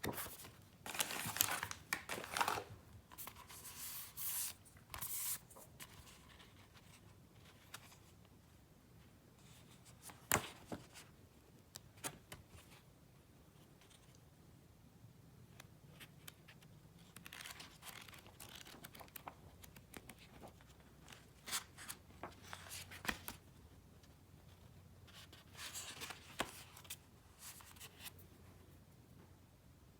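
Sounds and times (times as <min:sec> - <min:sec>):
book pages rustling and clicking: 0:00.0 - 0:07.0, 0:15.6 - 0:23.4.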